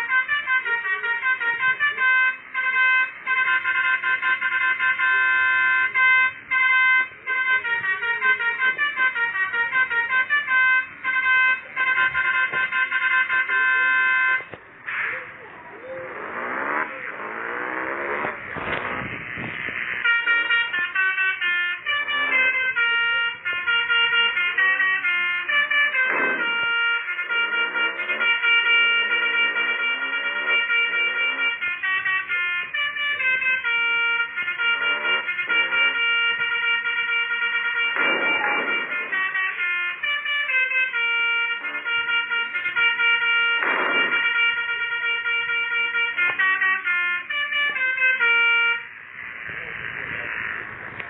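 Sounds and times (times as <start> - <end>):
multi-tone horn playing a tune: 0.0 - 51.0
brief noisy burst: 14.8 - 22.9, 37.8 - 39.6, 43.4 - 44.5.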